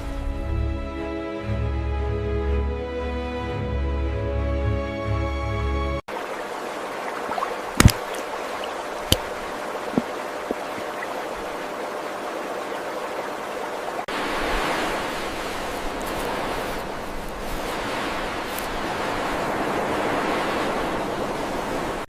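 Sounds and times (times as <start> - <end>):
music: 0.0 - 6.0
stream water flowing: 6.1 - 22.0.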